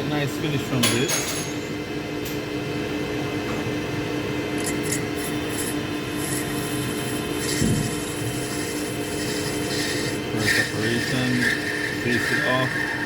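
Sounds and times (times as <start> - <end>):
metal lathe humming: 4.6 - 13.0
tool cutting brass: 4.6 - 13.0.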